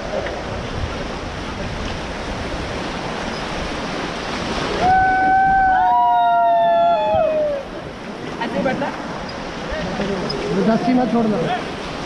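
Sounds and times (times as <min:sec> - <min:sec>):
rushing river water: 0:00.0 - 0:12.0
people whooping: 0:04.7 - 0:07.7.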